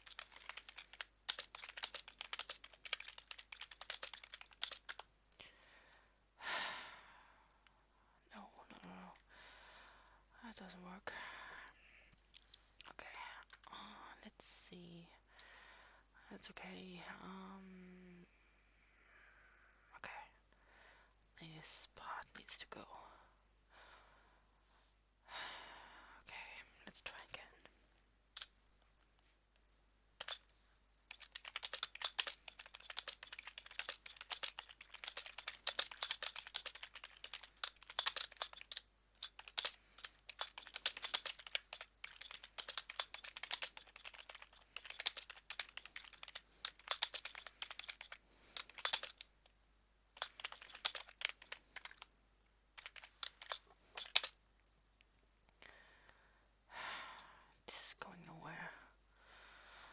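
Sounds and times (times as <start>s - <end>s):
typing on computer keyboard: 0.0s - 5.1s, 30.2s - 30.4s, 31.1s - 49.3s, 50.2s - 52.1s, 52.8s - 54.4s.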